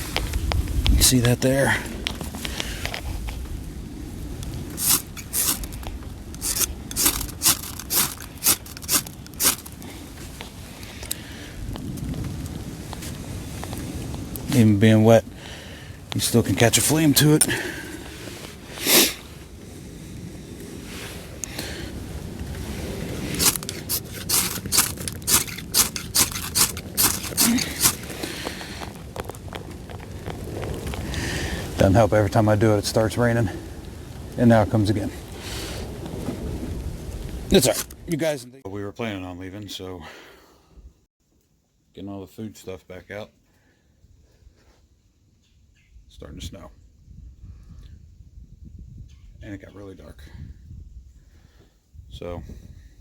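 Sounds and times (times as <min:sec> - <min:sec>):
fire starter scraping: 0:04.3 - 0:11.2, 0:16.2 - 0:19.3, 0:22.4 - 0:31.9, 0:37.5 - 0:38.2.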